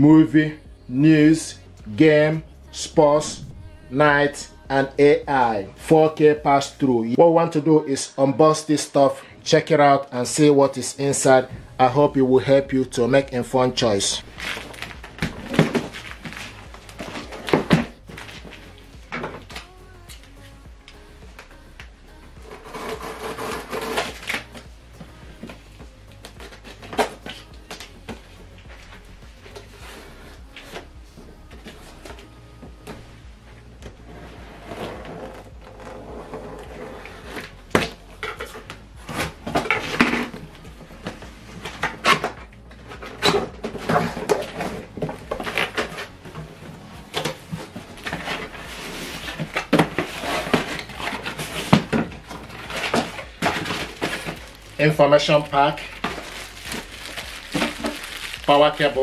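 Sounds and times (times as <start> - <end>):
cardboard rustling and scraping: 11.2 - 19.6, 22.4 - 25.6, 33.9 - 59.0
knocks and clicks of handled items: 37.3 - 54.8.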